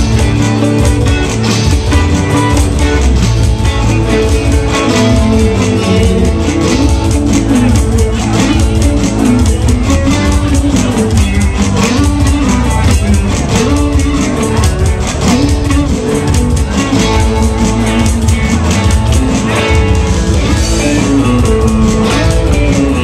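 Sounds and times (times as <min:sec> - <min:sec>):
electric guitar line: 0:00.0 - 0:23.0
live rock band instrumental: 0:00.0 - 0:23.0.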